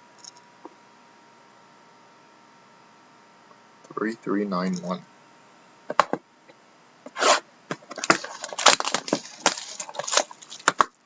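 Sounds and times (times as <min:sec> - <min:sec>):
packaging crackling and tearing: 0:07.2 - 0:11.0.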